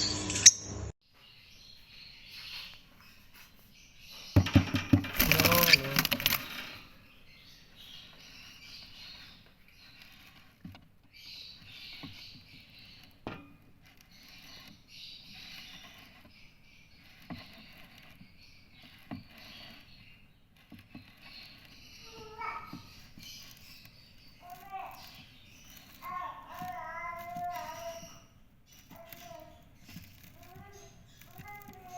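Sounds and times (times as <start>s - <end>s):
parrots chattering: 21.8s - 23.8s, 24.4s - 28.3s.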